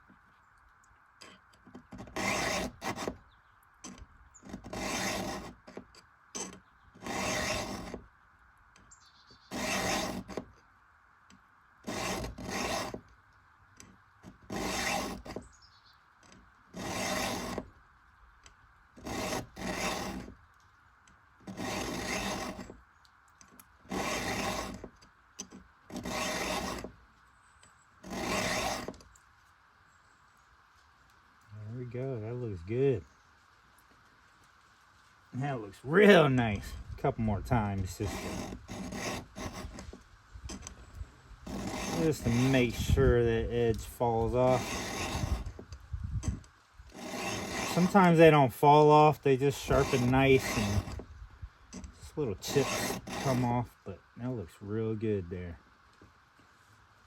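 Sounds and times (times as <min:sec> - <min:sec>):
file rasping on chainsaw teeth: 0:01.9 - 0:03.2, 0:03.9 - 0:05.8, 0:06.4 - 0:08.0, 0:09.5 - 0:10.4, 0:11.8 - 0:13.0, 0:14.3 - 0:15.4, 0:16.8 - 0:17.7, 0:19.0 - 0:20.3, 0:21.4 - 0:22.7, 0:23.9 - 0:24.9, 0:25.9 - 0:26.9, 0:28.0 - 0:29.0, 0:37.4 - 0:40.7, 0:41.4 - 0:51.0, 0:51.8 - 0:53.7.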